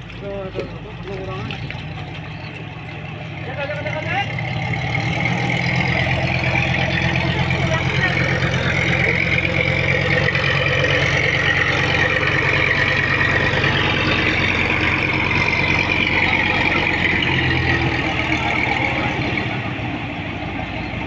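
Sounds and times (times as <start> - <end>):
boat engine drone: 0.0 - 21.0.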